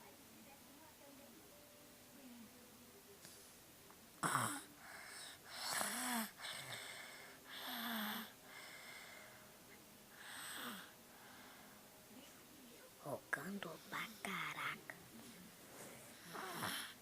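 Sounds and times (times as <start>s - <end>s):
wheezy snoring: 4.2s - 9.3s, 10.2s - 11.5s, 16.0s - 17.0s.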